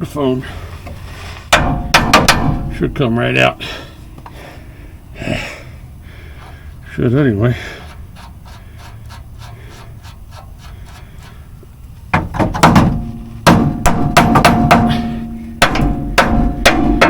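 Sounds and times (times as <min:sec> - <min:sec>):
hammer striking metal: 0:01.5 - 0:03.2, 0:12.6 - 0:17.0.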